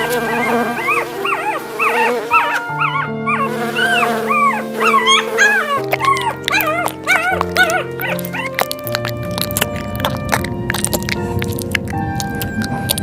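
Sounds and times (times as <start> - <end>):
background music with held chords: 0.0 - 13.0
dog-like whimpers: 0.1 - 8.8.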